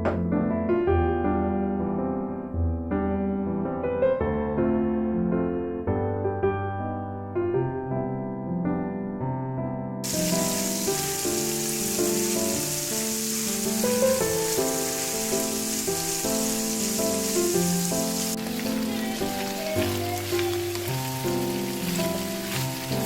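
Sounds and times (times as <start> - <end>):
piano music: 0.0 - 23.0
steady hiss: 10.0 - 23.0.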